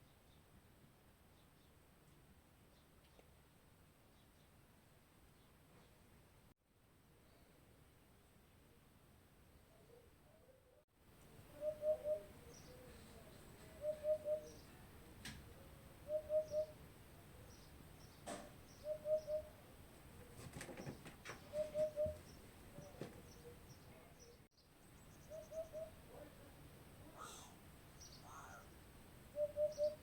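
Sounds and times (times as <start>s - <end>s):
bird hooting low: 11.4s - 13.0s, 13.7s - 14.7s, 16.0s - 16.8s, 18.8s - 19.6s, 21.4s - 23.6s, 25.2s - 26.3s, 27.1s - 30.0s
small birds chirping: 11.6s - 15.5s, 16.1s - 19.6s, 20.2s - 28.8s, 29.4s - 30.0s.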